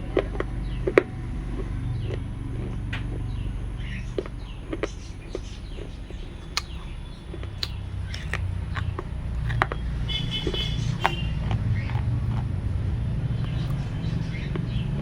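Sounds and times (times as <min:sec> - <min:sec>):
birds chirping: 0:00.0 - 0:15.0
low steady rumble: 0:00.0 - 0:15.0
sharp clicks: 0:04.1 - 0:12.5.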